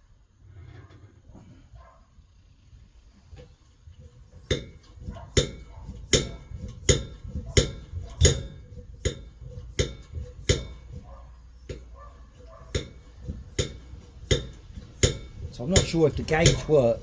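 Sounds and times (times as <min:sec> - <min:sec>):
hand air pump clacking: 0:03.4 - 0:17.0.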